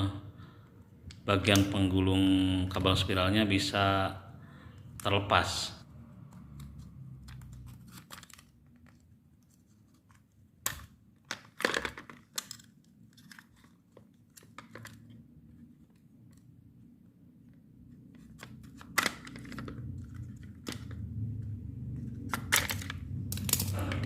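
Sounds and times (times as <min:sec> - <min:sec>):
plastic clips clicking and snapping: 0:22.2 - 0:24.0.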